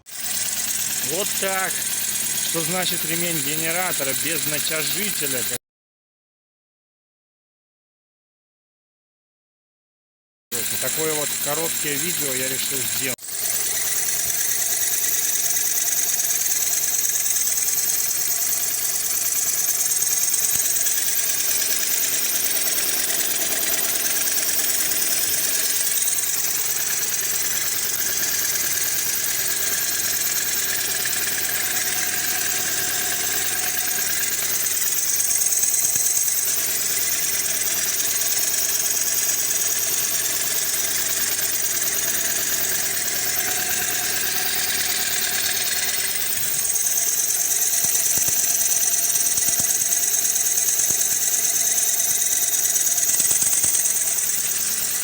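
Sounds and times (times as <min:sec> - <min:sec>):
car engine idling: 0:26.6 - 0:35.0.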